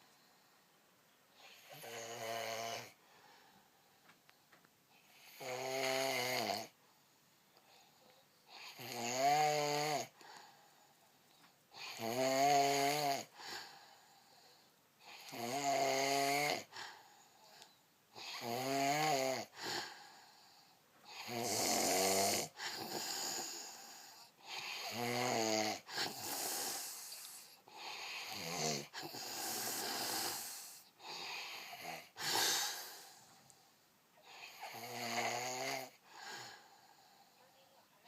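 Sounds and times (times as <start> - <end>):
person snoring heavily: 1.4 - 3.0, 5.2 - 6.8, 11.8 - 13.7, 15.1 - 16.8, 18.2 - 20.1, 21.1 - 33.3, 34.2 - 36.9.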